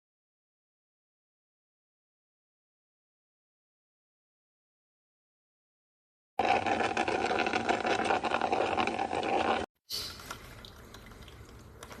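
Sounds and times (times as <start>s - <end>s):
coffee maker water gurgling: 6.4s - 12.0s.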